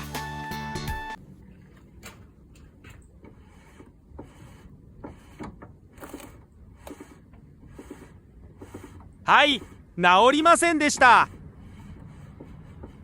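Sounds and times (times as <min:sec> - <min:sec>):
car knocking and clunking: 0:02.0 - 0:09.9, 0:10.8 - 0:13.0.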